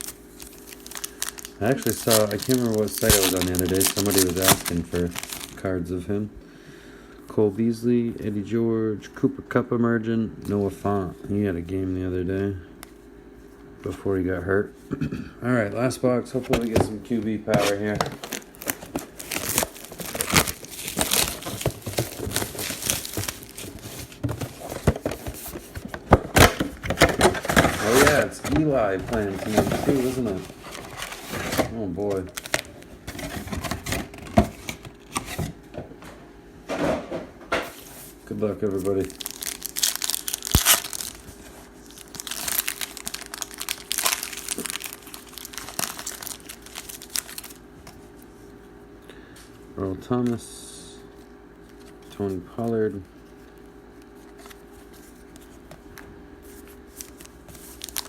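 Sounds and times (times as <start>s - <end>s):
plastic wrapping crinkling and tearing: 0.0s - 5.7s, 17.5s - 34.8s, 38.6s - 47.6s, 56.6s - 58.0s.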